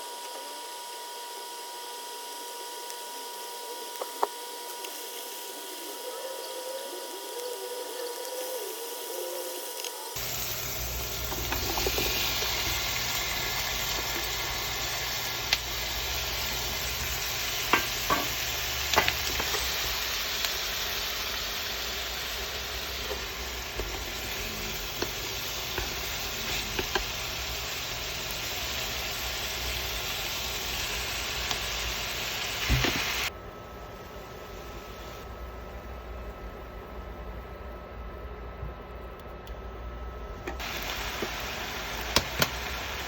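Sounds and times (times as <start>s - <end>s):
food sizzling in a frying pan: 1.5s - 33.3s, 40.5s - 43.0s.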